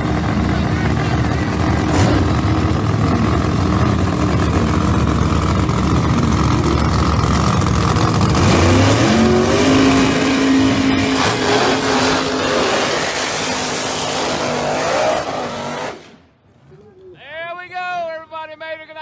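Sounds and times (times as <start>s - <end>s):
engine revving up: 0.0s - 16.2s
drag race car engines running: 0.0s - 16.6s.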